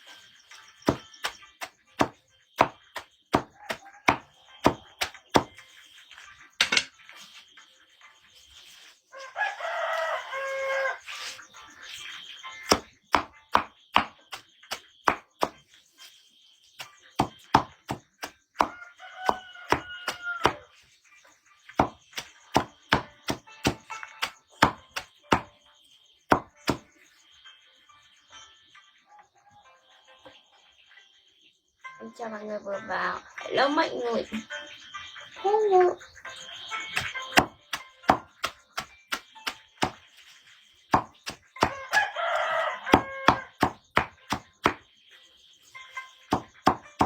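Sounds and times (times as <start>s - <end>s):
firewood being chopped: 0.8s - 5.7s, 6.6s - 7.0s, 12.7s - 15.6s, 16.8s - 20.7s, 21.8s - 25.5s, 26.3s - 26.9s, 36.9s - 40.0s, 40.9s - 44.8s, 46.3s - 47.0s
rooster crowing: 3.5s - 4.3s, 9.1s - 11.1s, 18.6s - 20.7s, 41.6s - 43.7s.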